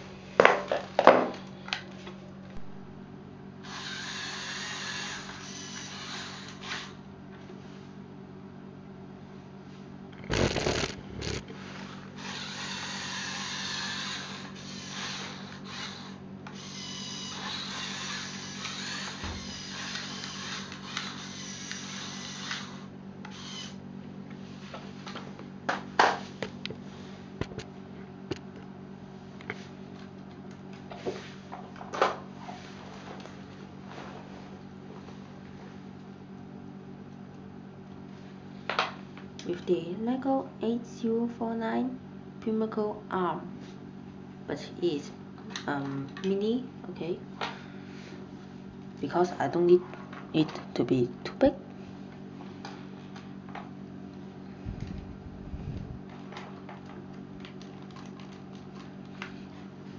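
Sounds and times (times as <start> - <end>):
small electric motors whirring: 3.6 - 7.0, 10.2 - 23.8.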